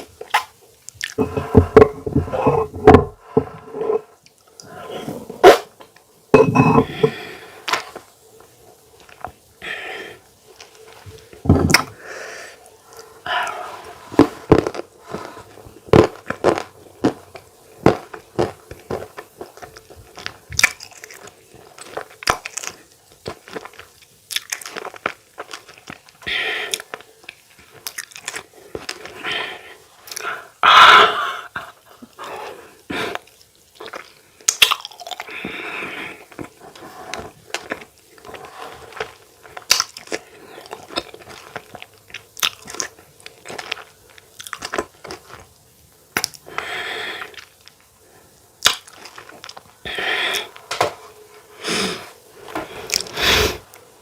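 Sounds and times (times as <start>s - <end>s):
chewing and mouth smacking: 17.9s - 29.1s, 36.3s - 45.5s.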